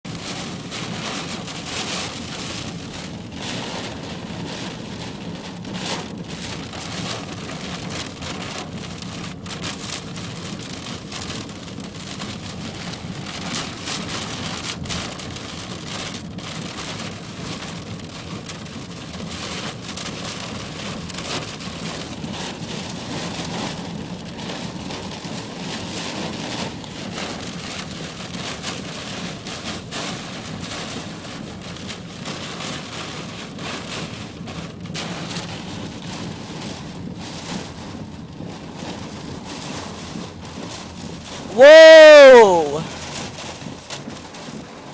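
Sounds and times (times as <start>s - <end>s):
heavy rain falling: 41.5s - 42.9s.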